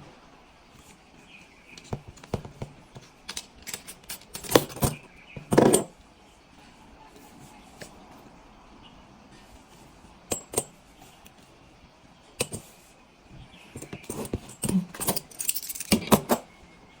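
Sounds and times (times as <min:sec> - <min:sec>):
metal pipe fittings clinking: 0:03.3 - 0:05.9, 0:10.3 - 0:10.7, 0:13.8 - 0:16.5.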